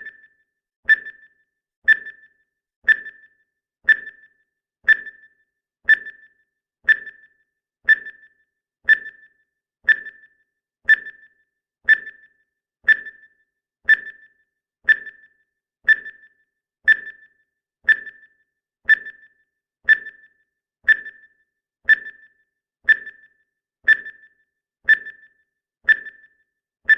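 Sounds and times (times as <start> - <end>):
clock ticking: 0.9 - 1.3, 1.9 - 2.3, 2.9 - 3.3, 3.9 - 4.3, 4.9 - 5.3, 5.9 - 6.3, 6.9 - 7.3, 7.9 - 9.3, 9.9 - 10.3, 10.9 - 11.3, 11.9 - 12.3, 12.9 - 13.3, 13.9 - 14.3, 14.9 - 15.3, 15.9 - 16.3, 16.9 - 18.3, 18.9 - 19.3, 19.9 - 20.3, 20.9 - 21.3, 21.9 - 22.3, 22.9 - 24.3, 24.9 - 26.3.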